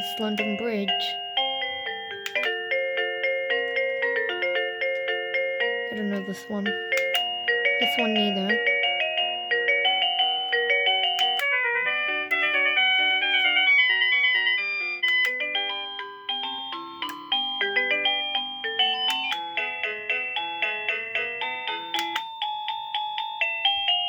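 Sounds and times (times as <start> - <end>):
electronic doorbell chime melody: 0.0 - 24.0.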